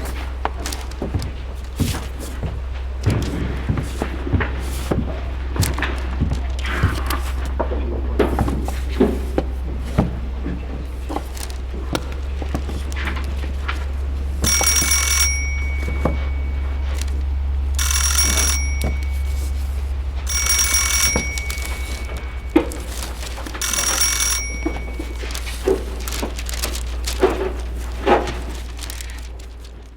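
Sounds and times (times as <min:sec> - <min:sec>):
steady low hum: 0:00.0 - 0:29.9
clicks and knocks: 0:10.2 - 0:29.9
telephone bell ringing: 0:14.4 - 0:26.0.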